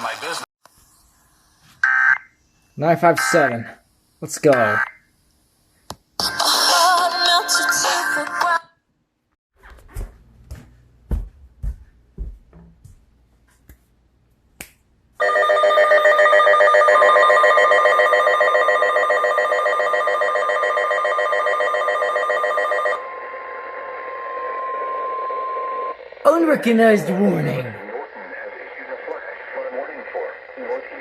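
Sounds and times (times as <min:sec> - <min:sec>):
phone emergency alert tone: 0:15.2 - 0:23.0
weather radio warning tone: 0:24.7 - 0:31.0.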